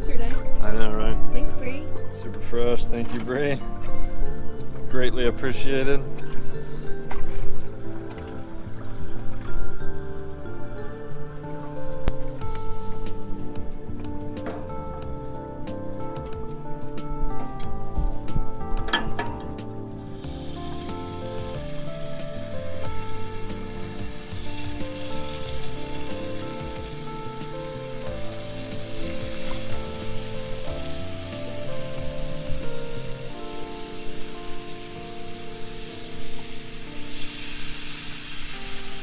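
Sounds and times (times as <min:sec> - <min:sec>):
calm background music: 0:00.0 - 0:39.0
food sizzling in a skillet: 0:19.0 - 0:39.0.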